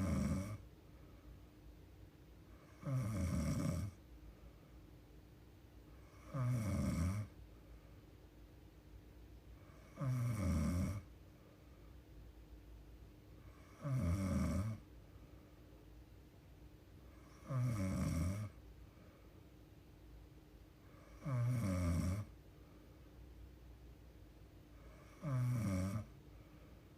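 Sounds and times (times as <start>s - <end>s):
woman snoring: 0.0s - 0.6s, 2.7s - 4.0s, 6.0s - 7.3s, 9.7s - 11.1s, 13.5s - 14.8s, 17.2s - 18.6s, 21.0s - 22.3s, 24.8s - 26.1s
faint steady hum: 0.0s - 26.9s.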